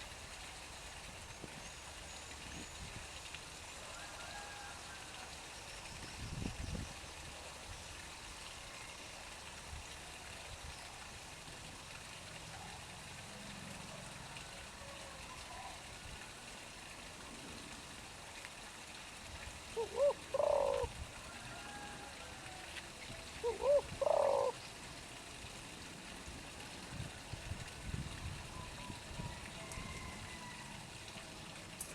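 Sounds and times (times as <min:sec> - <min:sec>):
water flowing into pond: 0:00.0 - 0:31.9.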